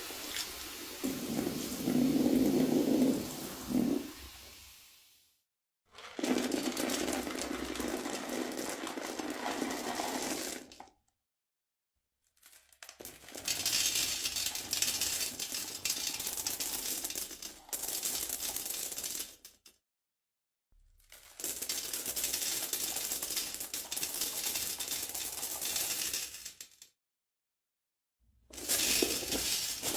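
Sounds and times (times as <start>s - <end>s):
toilet flushing: 0.0s - 5.0s.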